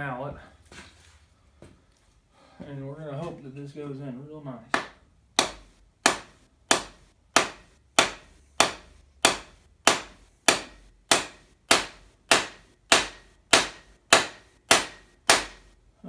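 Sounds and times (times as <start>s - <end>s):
rubber mallet striking metal tool: 4.7s - 15.8s.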